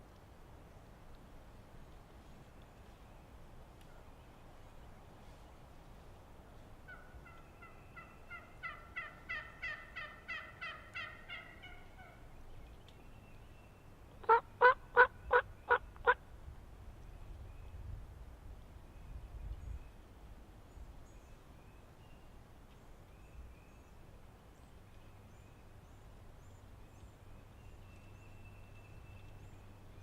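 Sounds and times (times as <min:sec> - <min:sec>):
wild turkey yelping: 0:06.9 - 0:12.2.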